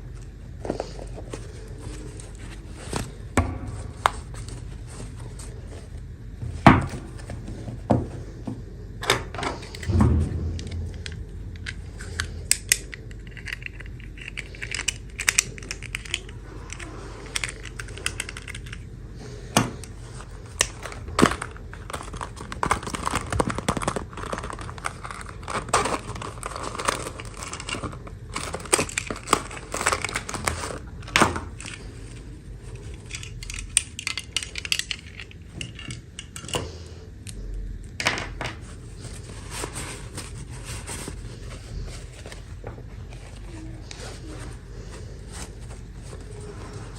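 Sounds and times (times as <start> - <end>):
plastic pieces clicking: 11.0 - 18.8, 32.8 - 36.7
plastic packaging crinkling: 12.0 - 36.0.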